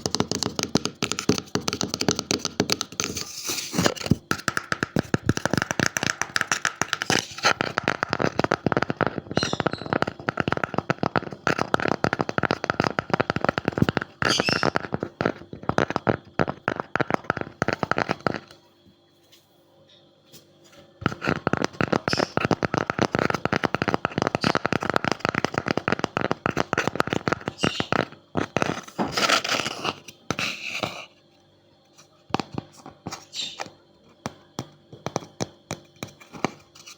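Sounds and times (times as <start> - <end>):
fingernails tapping on wood: 0.0 - 3.2, 3.9 - 18.5.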